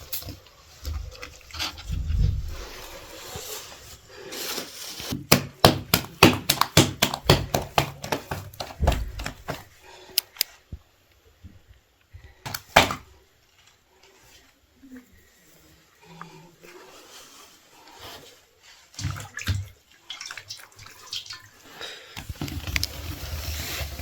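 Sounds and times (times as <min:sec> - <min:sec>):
sharp knocks or slaps: 0:05.2 - 0:09.6, 0:12.5 - 0:13.1.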